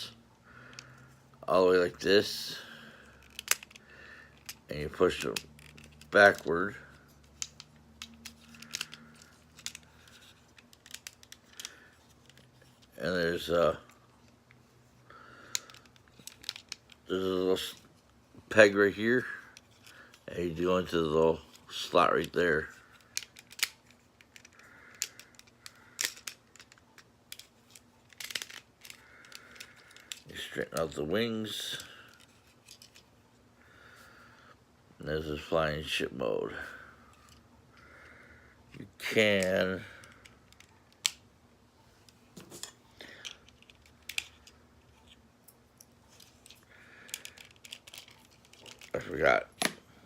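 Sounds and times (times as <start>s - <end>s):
plastic toy parts clicking: 3.2s - 6.5s, 7.2s - 12.8s, 15.5s - 17.1s, 22.9s - 30.8s, 39.3s - 41.2s, 42.6s - 45.2s, 45.8s - 49.8s
plastic toy clicks: 7.4s - 11.7s, 22.9s - 27.5s, 47.0s - 49.0s.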